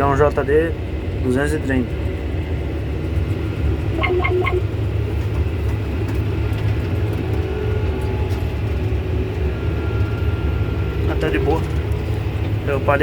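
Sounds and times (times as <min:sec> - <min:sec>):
tractor engine droning: 0:00.2 - 0:13.0
short quick beeps: 0:04.0 - 0:04.6.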